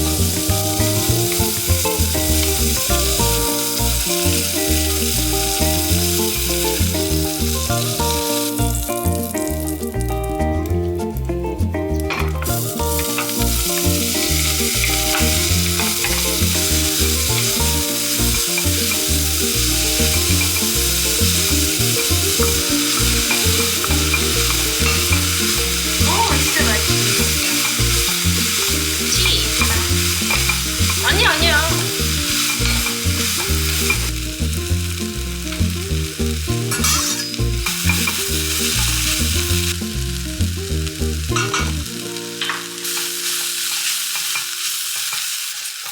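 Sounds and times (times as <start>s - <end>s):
food sizzling in a pan: 0.0s - 11.3s, 11.9s - 45.9s
utensil scraping pan: 36.7s - 38.2s.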